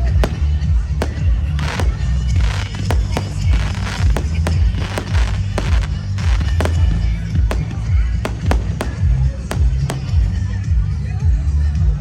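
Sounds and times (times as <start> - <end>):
fireworks crackling hiss: 0.0 - 10.5
fireworks bangs: 0.0 - 10.9
loud music with heavy bass: 1.6 - 7.0.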